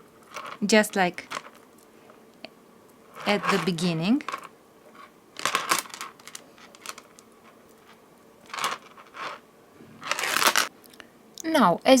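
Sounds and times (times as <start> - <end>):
thread rustling: 1.2 - 1.7, 3.1 - 10.7.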